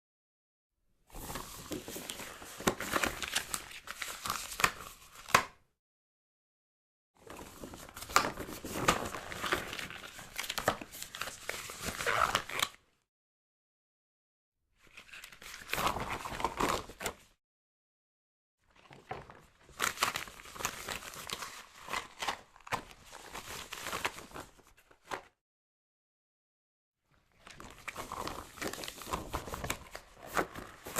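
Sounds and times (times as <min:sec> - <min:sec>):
rubber gloves crinkling and squeaking: 0:08.2 - 0:12.7.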